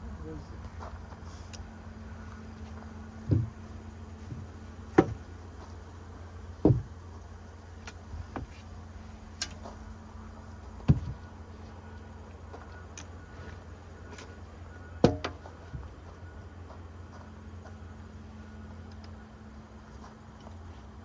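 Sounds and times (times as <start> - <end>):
steady low hum: 0.0 - 21.0
sharp knocks and thuds: 2.7 - 5.7, 6.6 - 7.2, 10.8 - 11.3, 15.0 - 16.0.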